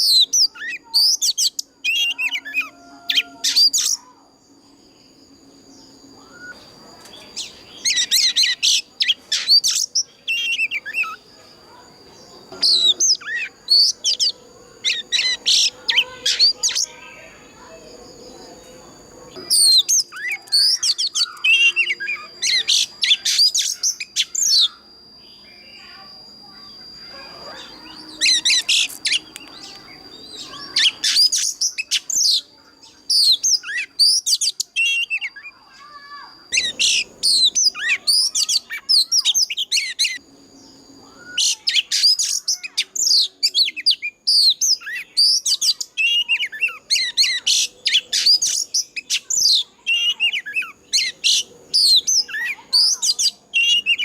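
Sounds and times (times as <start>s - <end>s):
bird singing whistles and chirps: 0.0s - 54.0s
thin steady high tone: 0.0s - 54.0s.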